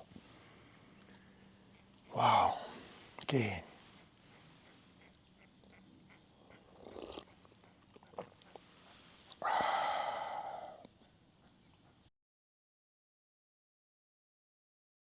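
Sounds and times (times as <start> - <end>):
quiet chewing and mouth clicks: 0.0 - 2.1, 4.0 - 9.5, 10.5 - 11.9
breathy sound: 9.3 - 10.9.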